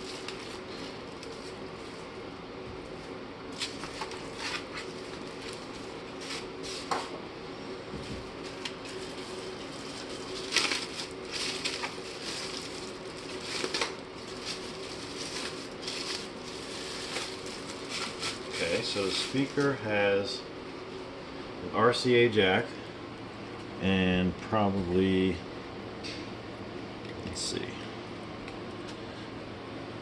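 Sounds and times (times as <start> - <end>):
packaging rustling and crinkling: 0.0 - 2.1, 3.5 - 7.0, 8.0 - 19.8.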